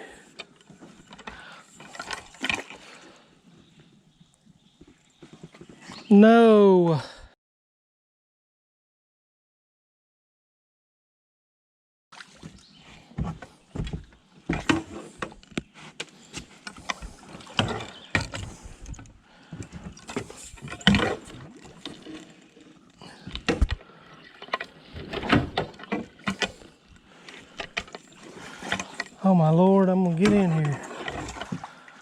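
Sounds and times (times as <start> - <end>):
boat hull knocking and scraping: 12.5 - 26.7, 27.3 - 31.8.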